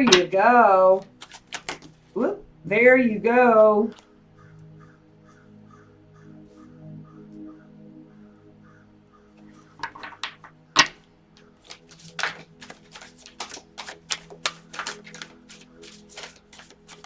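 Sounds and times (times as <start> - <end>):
cards being shuffled: 0.0 - 0.3, 0.9 - 2.2, 9.8 - 11.0, 11.6 - 17.0.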